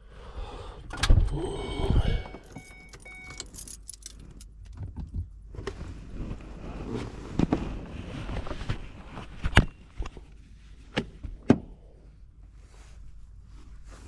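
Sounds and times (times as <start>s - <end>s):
gear rummaging and rustling: 2.4s - 4.5s.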